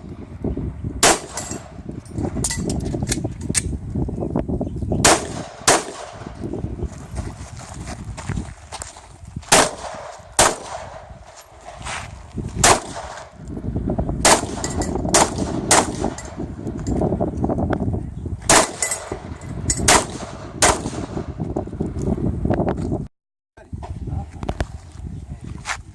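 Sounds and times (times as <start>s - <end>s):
pistol shots: 1.0s - 1.8s, 5.0s - 6.4s, 9.5s - 11.2s, 12.6s - 13.4s, 14.2s - 16.4s, 18.5s - 21.3s.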